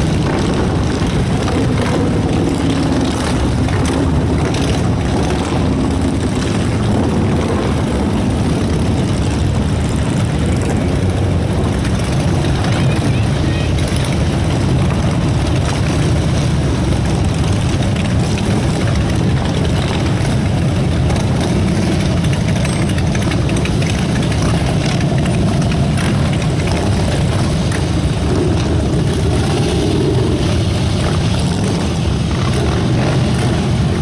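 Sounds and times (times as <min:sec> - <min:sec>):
vehicle engines low rumble: 0:00.0 - 0:34.0.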